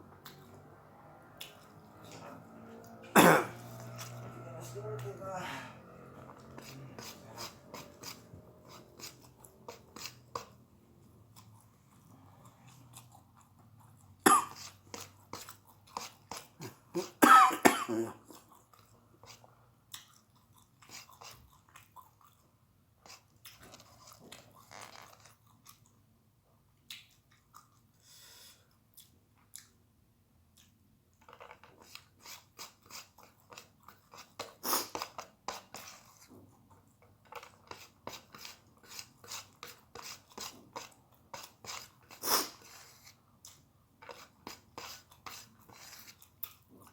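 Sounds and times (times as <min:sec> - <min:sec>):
person coughing: 0:03.2 - 0:03.6, 0:14.2 - 0:14.6, 0:17.0 - 0:18.2
person chewing and crunching: 0:05.8 - 0:17.2, 0:18.2 - 0:22.5, 0:23.1 - 0:26.0, 0:30.5 - 0:46.9.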